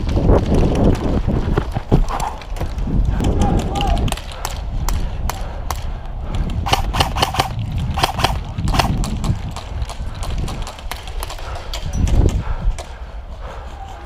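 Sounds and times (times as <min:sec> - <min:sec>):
airsoft guns firing: 0:06.6 - 0:09.2.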